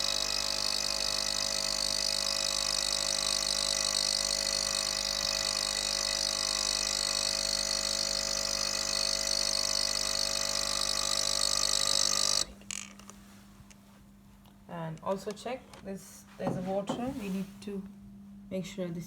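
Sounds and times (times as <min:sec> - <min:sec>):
coffee machine pump running: 0:00.0 - 0:13.0.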